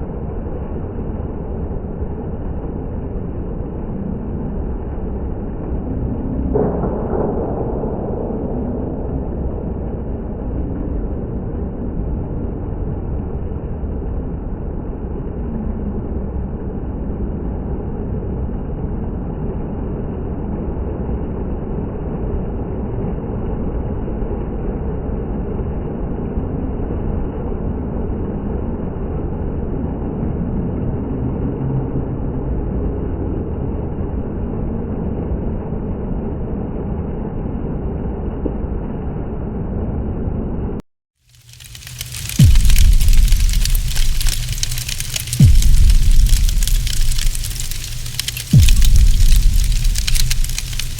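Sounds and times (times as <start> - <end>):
indoor water fountain running: 41.3 - 50.9.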